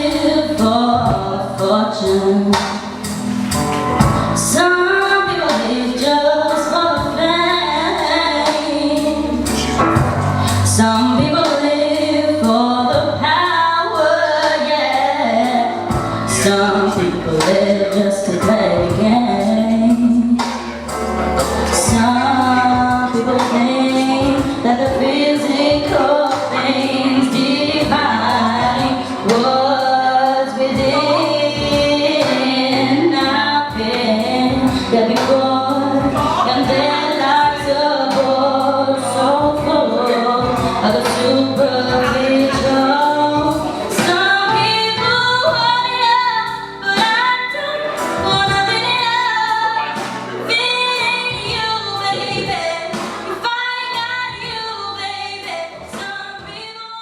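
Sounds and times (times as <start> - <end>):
woman singing: 0.0 - 3.2, 4.0 - 20.8, 21.6 - 57.0
music with steady beat: 0.0 - 57.0.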